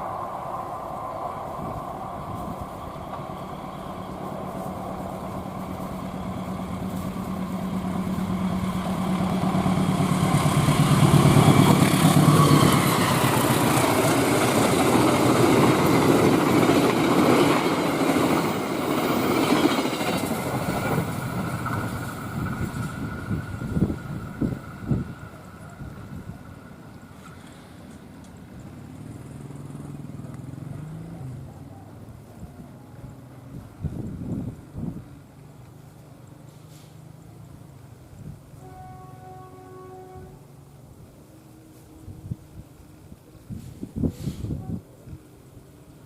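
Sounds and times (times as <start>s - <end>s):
carriages rushing past on rails: 0.0s - 46.0s
diesel locomotive engine hum: 0.0s - 46.0s.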